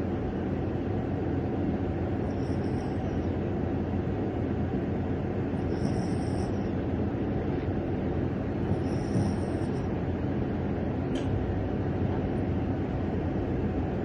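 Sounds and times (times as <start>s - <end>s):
dog snoring: 2.0s - 3.6s, 4.8s - 10.1s.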